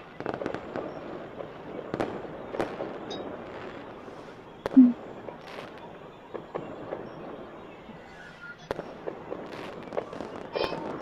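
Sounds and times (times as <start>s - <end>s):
distant fireworks bangs: 0.0s - 11.0s.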